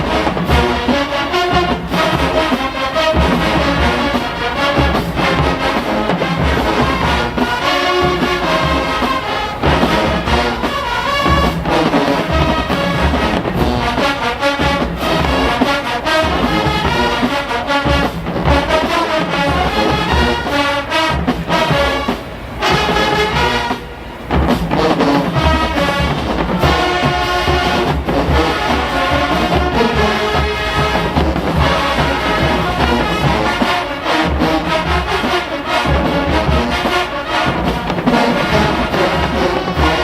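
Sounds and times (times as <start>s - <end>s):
marching band playing: 0.0s - 40.0s.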